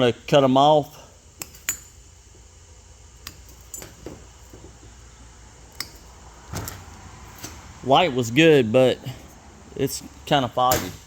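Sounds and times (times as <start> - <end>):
low steady hum: 0.0 - 11.0
hand tools clicking and clinking: 3.2 - 4.2.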